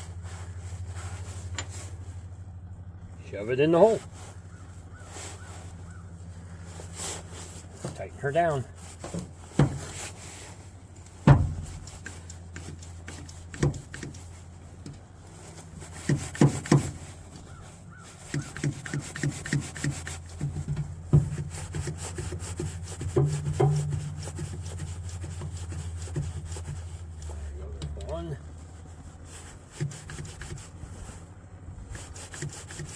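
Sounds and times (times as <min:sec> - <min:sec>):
steady low hum: 0:00.0 - 0:32.9
hand tools clicking and knocking: 0:18.3 - 0:26.5.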